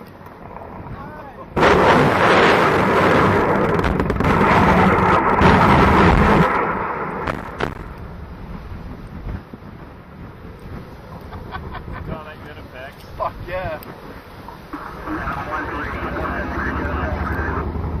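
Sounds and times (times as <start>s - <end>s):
sharp cracks: 0.0s - 8.1s
minigun firing: 1.6s - 7.9s.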